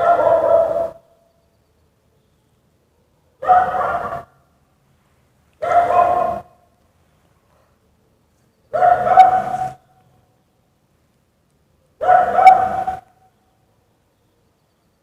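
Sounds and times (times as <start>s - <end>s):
dog barking: 0.0s - 1.1s, 3.4s - 4.4s, 5.6s - 6.6s, 8.7s - 9.8s, 12.0s - 13.2s.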